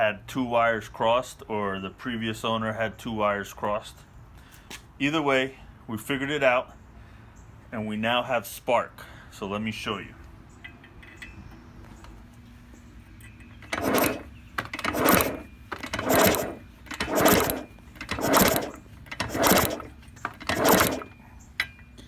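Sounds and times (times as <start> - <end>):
engine kick starter strokes: 13.6 - 21.2.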